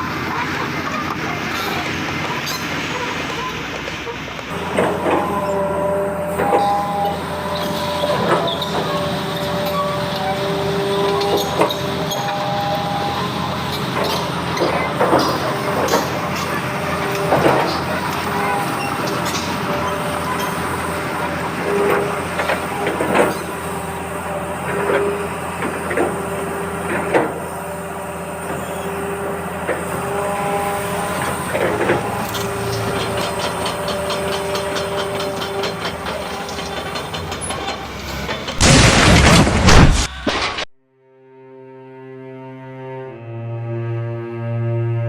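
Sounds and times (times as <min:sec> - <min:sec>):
small electric motors whining: 0:00.0 - 0:38.6
loud rush of noise: 0:37.4 - 0:40.7.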